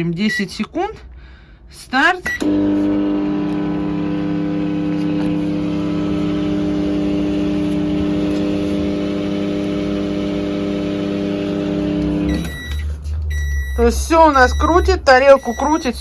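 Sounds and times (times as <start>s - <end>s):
microwave oven humming: 2.4s - 13.6s.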